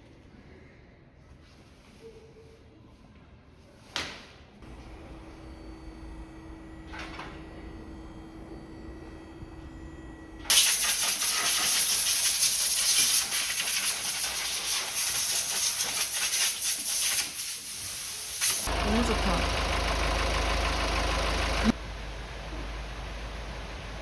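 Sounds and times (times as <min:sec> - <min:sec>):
faint low hum: 0:04.6 - 0:10.5
loud steady hiss: 0:10.5 - 0:18.8.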